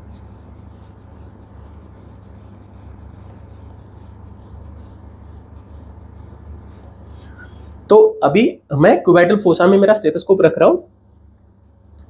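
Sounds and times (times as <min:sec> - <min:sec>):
inflation bulb pumping air: 0:00.0 - 0:07.9
steady low hum: 0:00.0 - 0:12.0.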